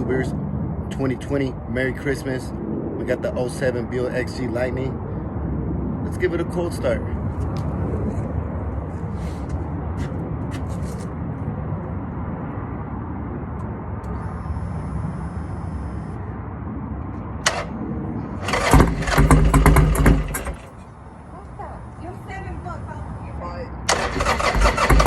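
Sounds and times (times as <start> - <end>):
motorcycle engine idling and revving: 17.4 - 20.9, 23.9 - 25.0.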